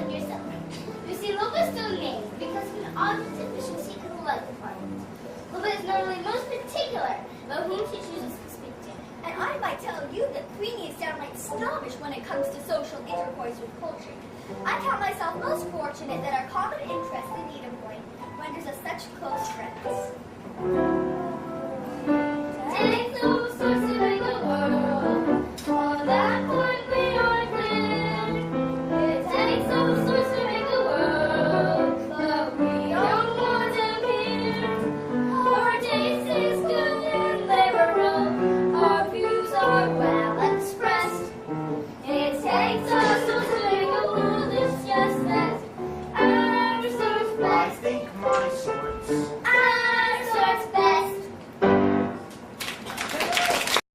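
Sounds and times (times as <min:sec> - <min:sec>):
piano accompaniment: 0:00.0 - 0:08.7, 0:12.2 - 0:52.6
voices singing show tune: 0:21.2 - 0:41.4, 0:42.0 - 0:48.5.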